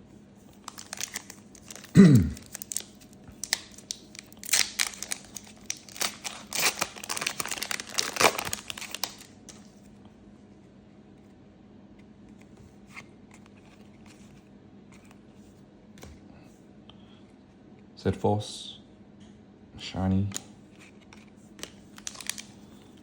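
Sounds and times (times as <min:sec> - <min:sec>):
foil wrapper tearing and crinkling: 0:00.6 - 0:09.6, 0:21.6 - 0:23.0.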